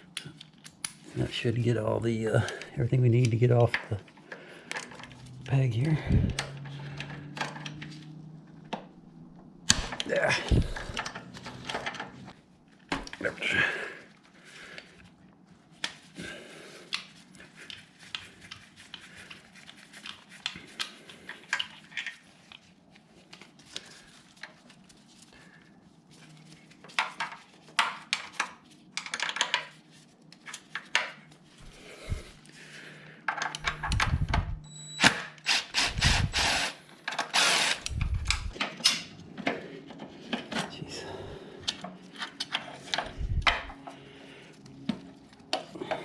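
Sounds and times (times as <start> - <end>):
power tool bursts: 34.9 - 37.9.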